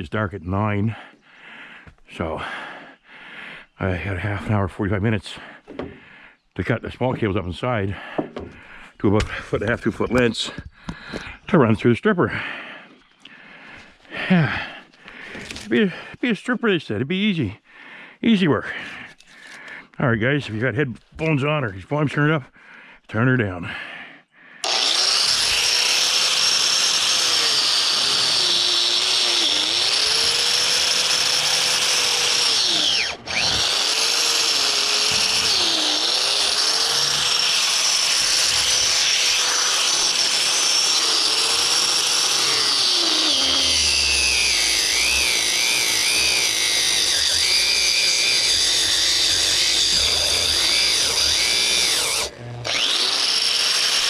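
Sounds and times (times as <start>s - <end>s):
power tool motor whining under load: 24.6s - 54.0s.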